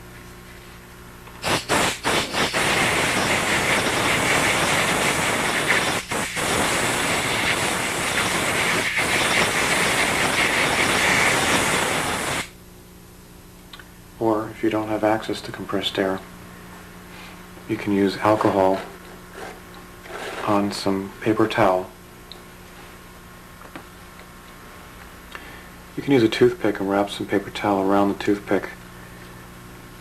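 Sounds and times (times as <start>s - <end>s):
compressed air hissing: 1.4s - 12.6s.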